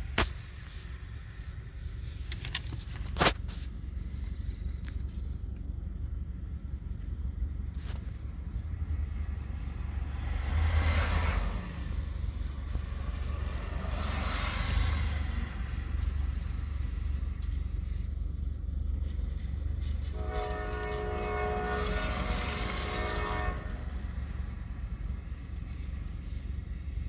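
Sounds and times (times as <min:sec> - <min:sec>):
low rumble: 0:00.0 - 0:27.0
locomotive horn: 0:19.8 - 0:25.2.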